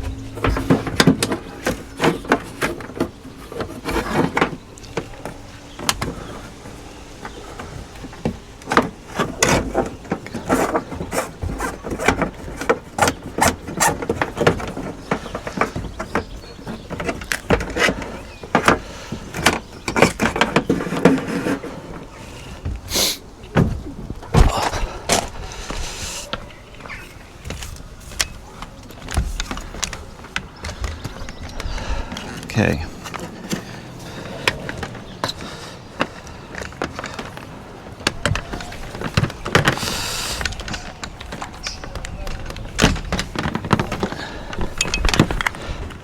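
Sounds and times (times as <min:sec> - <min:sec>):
cables clicking and knocking: 0:27.4 - 0:46.0.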